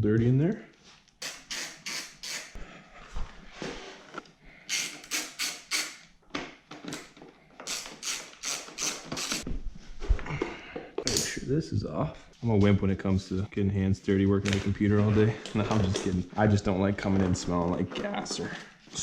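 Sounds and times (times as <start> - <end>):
socket ratchet clicking: 1.2 - 2.6, 4.7 - 6.0, 7.7 - 9.4.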